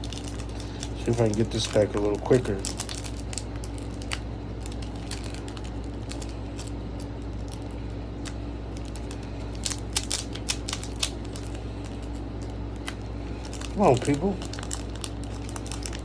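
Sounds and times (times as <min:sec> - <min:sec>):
foil wrapper crinkling: 0:00.0 - 0:16.0
steady low hum: 0:00.0 - 0:16.0.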